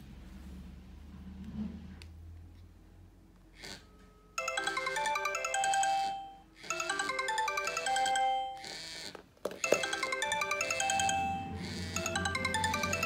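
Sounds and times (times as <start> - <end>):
phone ringtone chiming melody: 4.4 - 8.8, 9.6 - 13.0.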